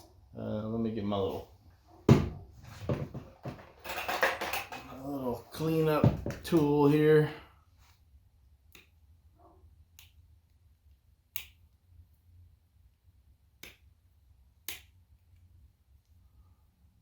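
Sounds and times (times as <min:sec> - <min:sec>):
low steady hum: 0:03.8 - 0:17.0.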